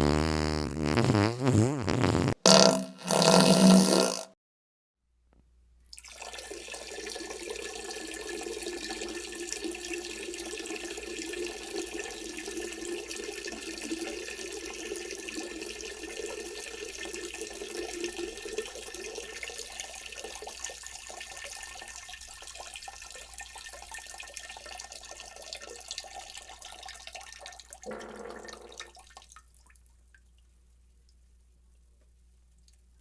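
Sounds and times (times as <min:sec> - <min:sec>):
running water splashing: 0:27.9 - 0:29.7.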